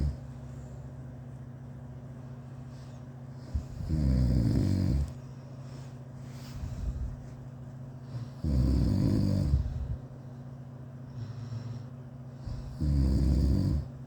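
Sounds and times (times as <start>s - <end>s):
person snoring: 3.6s - 5.2s, 8.4s - 10.0s, 12.4s - 13.9s.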